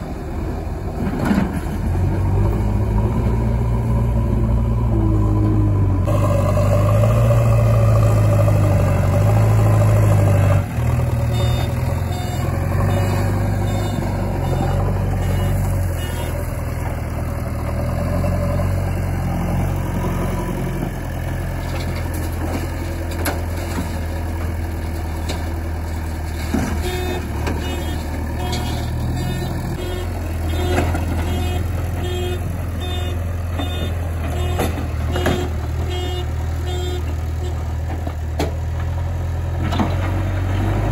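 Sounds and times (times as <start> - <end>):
heavy diesel engines running: 0.0 - 40.9
reversing alarm beeping: 11.3 - 16.4, 26.8 - 37.0.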